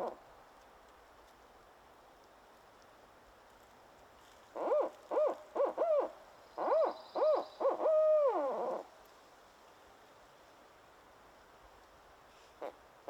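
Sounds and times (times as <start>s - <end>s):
owl hooting: 4.6s - 8.9s.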